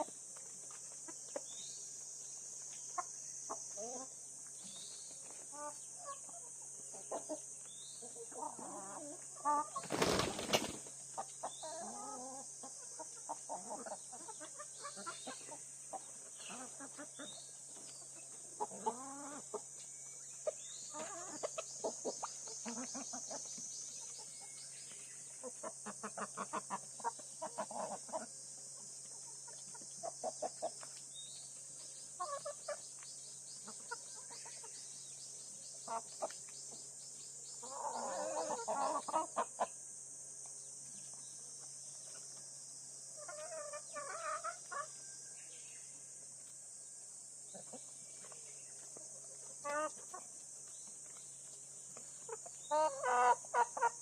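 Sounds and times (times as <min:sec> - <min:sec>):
chickens clucking: 0:00.0 - 0:35.1, 0:35.7 - 0:39.8, 0:40.8 - 0:45.1, 0:47.5 - 0:54.0
steady high-pitched hiss: 0:00.0 - 0:54.0
wing flapping: 0:09.7 - 0:10.9.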